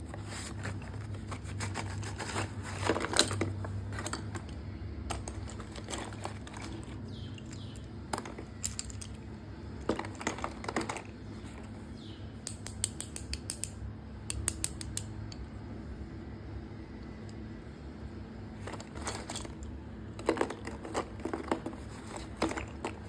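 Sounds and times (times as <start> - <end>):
small hard objects clicking: 12.4 - 15.1.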